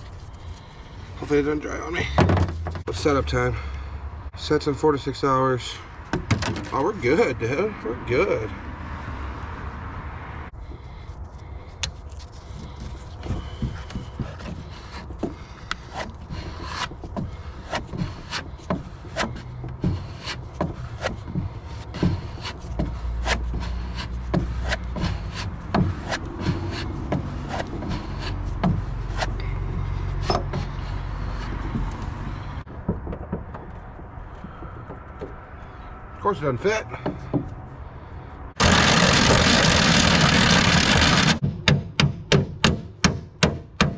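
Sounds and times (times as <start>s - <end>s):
hand tools clicking and scraping: 11.7s - 32.7s, 38.6s - 41.4s.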